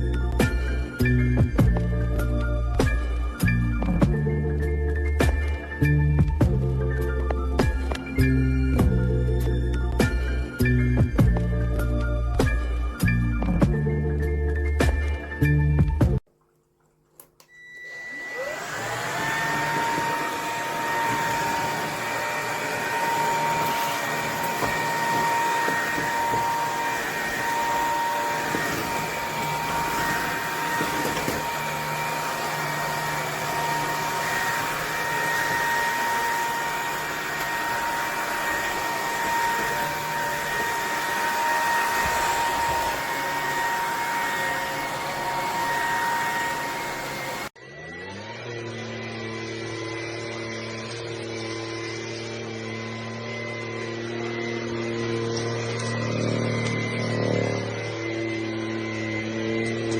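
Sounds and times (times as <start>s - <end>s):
vacuum motor whining: 17.2s - 59.9s.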